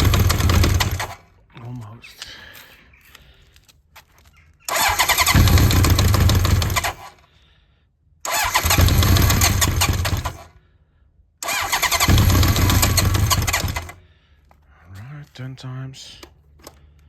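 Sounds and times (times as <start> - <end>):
electric starter cranking engine: 0.0 - 1.2, 4.7 - 7.2, 8.2 - 10.5, 11.4 - 14.0.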